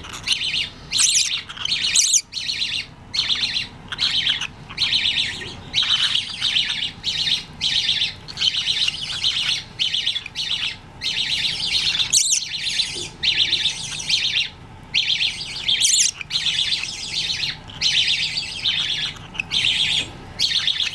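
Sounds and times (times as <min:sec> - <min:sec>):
budgerigars chattering: 0:00.0 - 0:20.9
shrill bird calls: 0:00.0 - 0:20.9.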